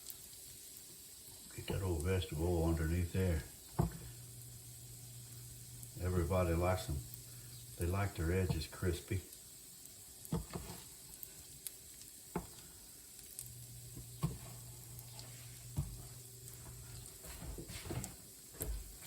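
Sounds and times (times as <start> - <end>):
pancake sizzling in a pan: 0.0 - 19.0.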